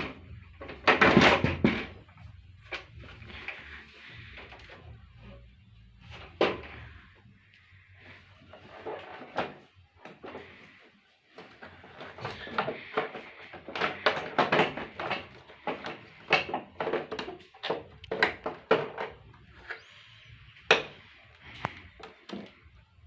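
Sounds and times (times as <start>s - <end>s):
plastic clicks and rattles: 11.6s - 19.8s.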